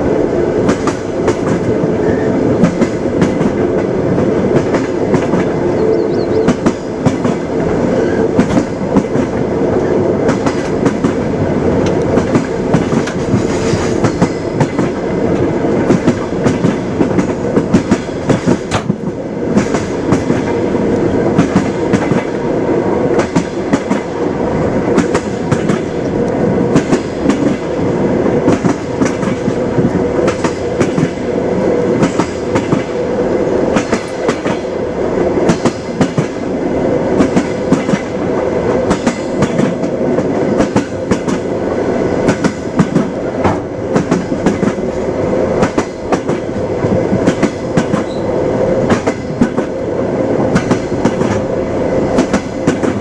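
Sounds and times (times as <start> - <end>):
train rumbling on track: 0.0 - 53.0
wheels clacking over rail joints: 6.5 - 22.4.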